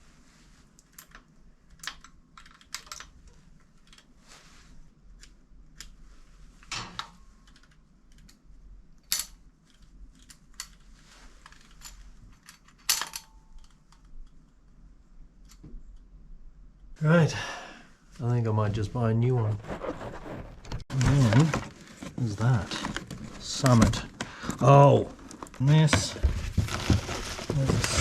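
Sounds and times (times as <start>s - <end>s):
small metal parts clinking: 11.4s - 13.8s.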